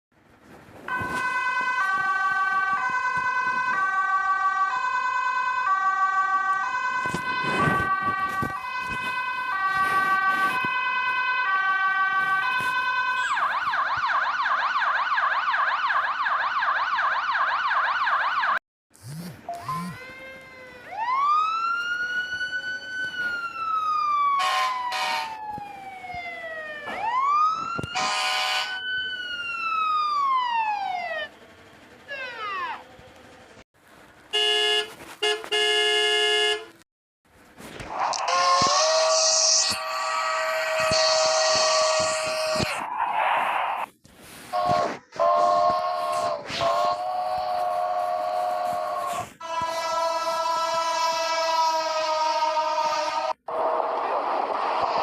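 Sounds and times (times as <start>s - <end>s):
electronic siren wailing and yelping: 0.9s - 31.4s, 32.0s - 32.9s, 37.9s - 55.0s
short horn blasts: 28.0s - 28.8s, 34.3s - 36.7s, 44.5s - 50.3s.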